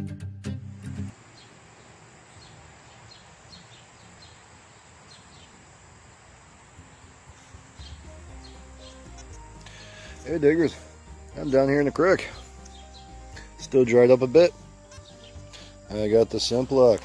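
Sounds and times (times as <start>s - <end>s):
guitar music: 0.0s - 1.1s, 6.8s - 17.0s
high-pitched insect trill: 1.1s - 17.0s
bird chirps: 1.2s - 5.7s, 6.9s - 13.8s, 14.6s - 16.0s.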